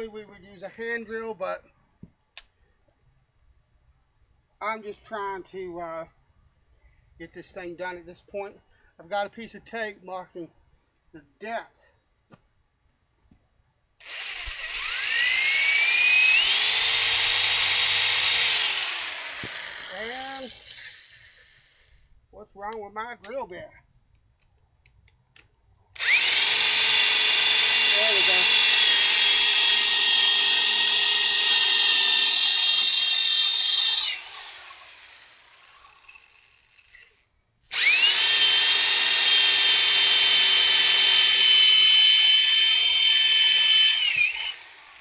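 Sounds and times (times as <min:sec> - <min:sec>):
electric drill whining: 0:14.0 - 0:22.0, 0:26.0 - 0:45.0.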